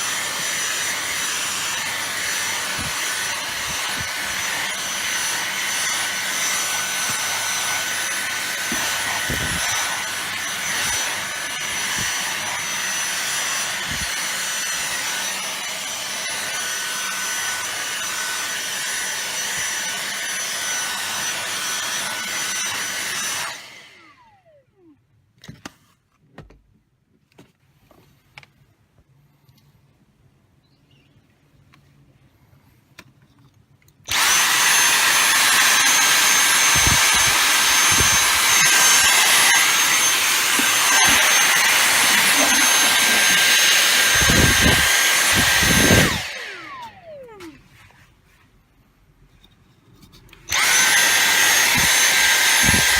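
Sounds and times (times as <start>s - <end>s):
vacuum cleaner running: 0.0s - 24.9s, 34.1s - 48.0s, 50.5s - 52.9s
motor whine spinning down: 34.1s - 47.6s.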